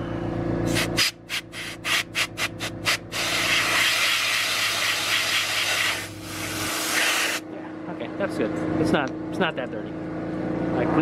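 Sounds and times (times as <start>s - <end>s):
steady low hum: 0.0s - 11.0s
air blow gun blasting: 0.7s - 7.4s.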